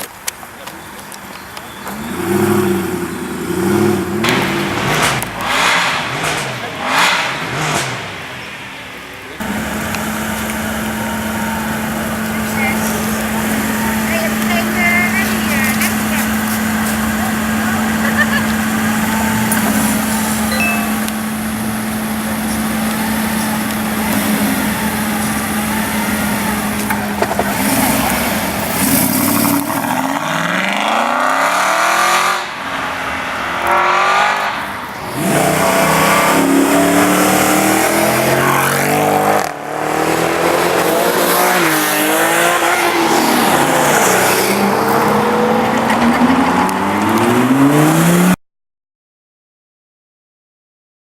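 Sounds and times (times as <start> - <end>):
car engine revving and accelerating: 1.9 - 8.4, 9.4 - 48.4.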